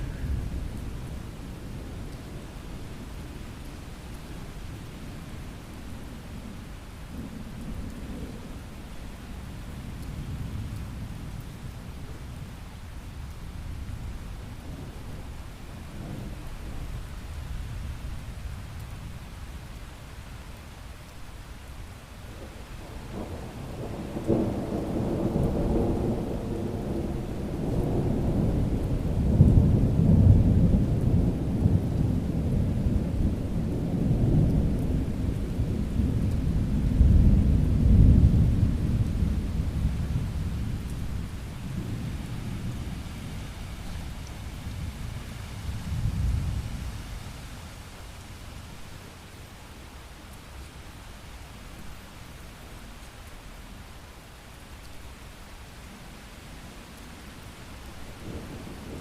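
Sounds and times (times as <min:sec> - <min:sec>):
rain falling: 0:00.0 - 0:59.0
rolling thunder: 0:22.8 - 0:47.1, 0:58.2 - 0:59.0.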